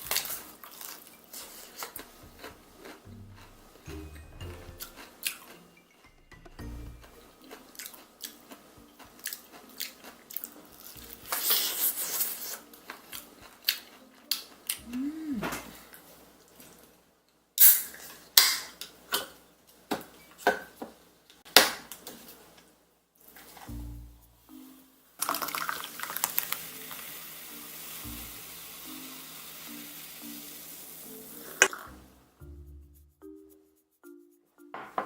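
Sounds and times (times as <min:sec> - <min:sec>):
crunchy chewing of fried chicken: 0:00.1 - 0:03.6, 0:07.4 - 0:14.8.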